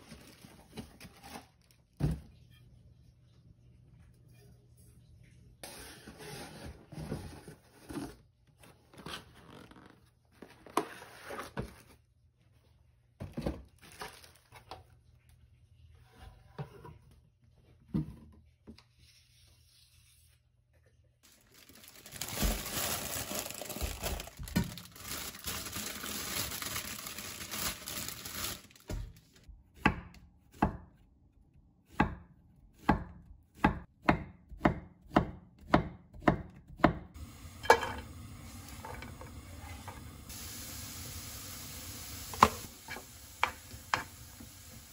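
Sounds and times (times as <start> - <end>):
rustling tearing noise: 21.2 - 29.5
knife chopping on cutting board: 31.9 - 37.1.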